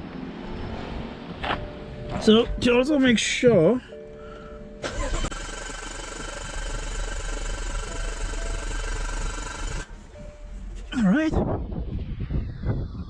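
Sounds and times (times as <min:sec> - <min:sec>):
engine cranking on starter motor: 0:04.8 - 0:10.0.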